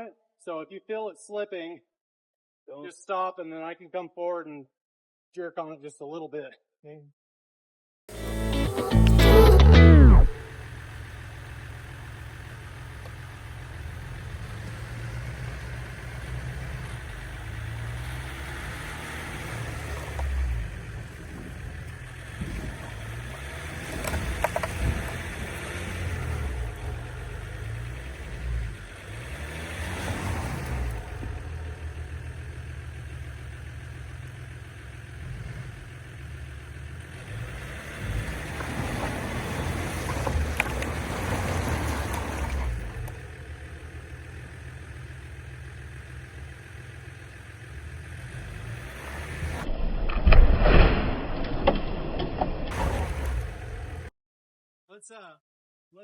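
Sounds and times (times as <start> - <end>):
diesel engine revving: 8.1 - 54.1.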